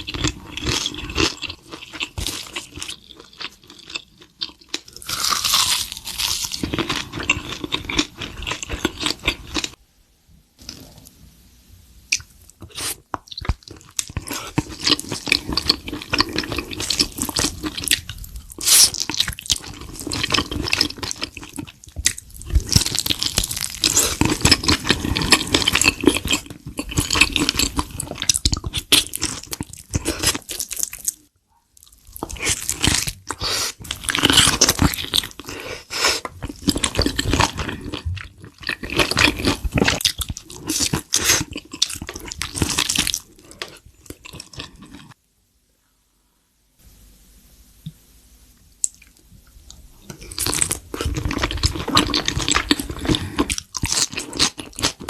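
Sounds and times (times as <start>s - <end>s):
chewing and slurping: 12.2s - 31.1s, 31.8s - 45.2s, 50.0s - 55.0s.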